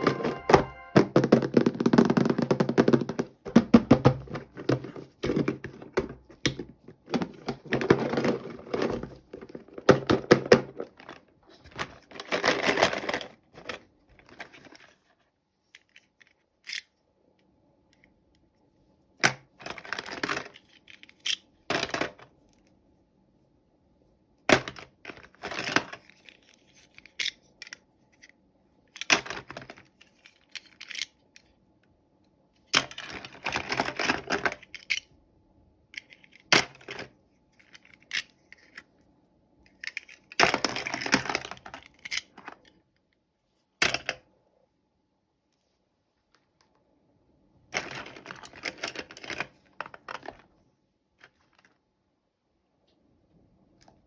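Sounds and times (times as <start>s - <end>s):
plastic pieces clicking: 29.0s - 31.4s, 32.7s - 35.1s, 39.7s - 42.6s.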